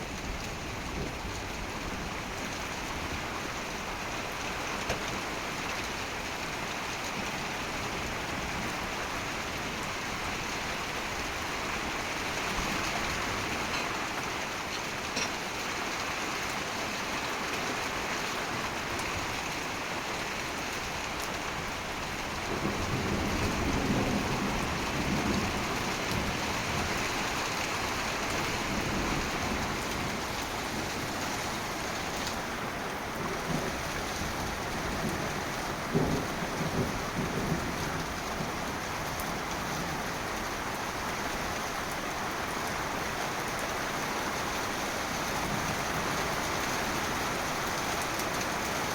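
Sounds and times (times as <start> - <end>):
heavy rain pouring: 0.0 - 48.9
low rumble of thunder: 21.7 - 31.8, 33.1 - 41.1.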